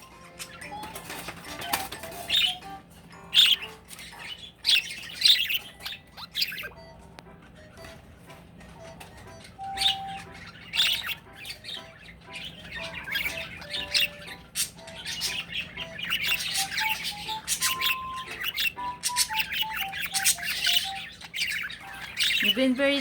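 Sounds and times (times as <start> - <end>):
simple melody background music: 0.0 - 23.0
pet bird calling: 0.1 - 23.0.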